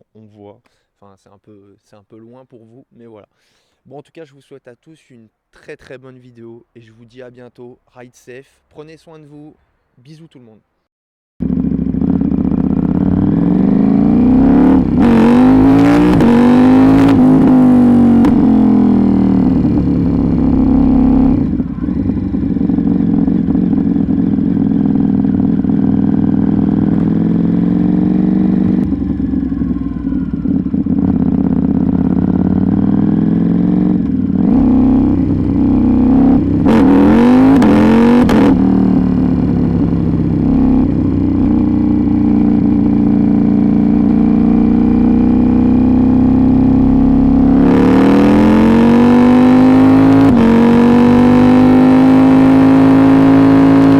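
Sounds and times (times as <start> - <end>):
motorcycle engine revving: 11.4 - 53.9.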